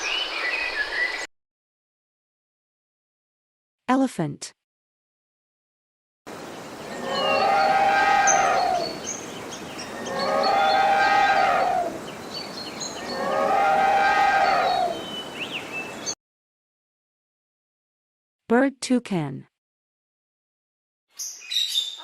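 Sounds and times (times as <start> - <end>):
birds chirping: 6.3 - 16.2
elephant trumpeting: 6.9 - 9.0, 9.8 - 12.1, 12.8 - 15.1.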